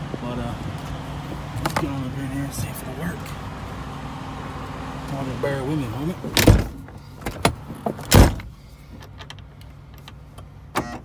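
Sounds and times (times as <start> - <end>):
knocks and thumps on truck door: 6.4 - 8.5.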